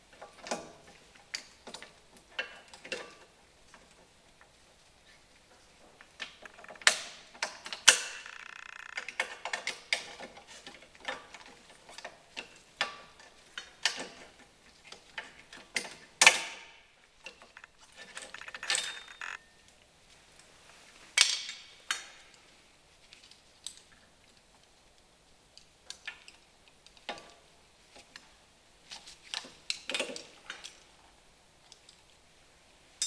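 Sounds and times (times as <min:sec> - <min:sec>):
ratchet wrench clicking: 0:07.9 - 0:09.1, 0:17.6 - 0:19.4.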